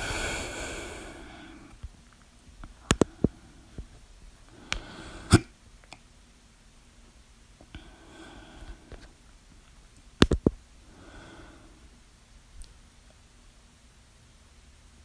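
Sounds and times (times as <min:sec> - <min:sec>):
long hissing rush: 0:00.0 - 0:01.8.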